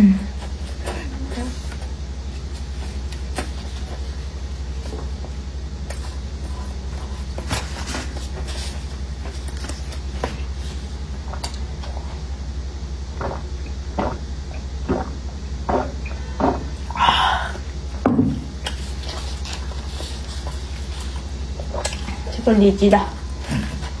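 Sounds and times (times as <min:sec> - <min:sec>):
steady low hum: 0:00.0 - 0:24.0
biting and chewing: 0:13.0 - 0:17.1, 0:18.6 - 0:22.4.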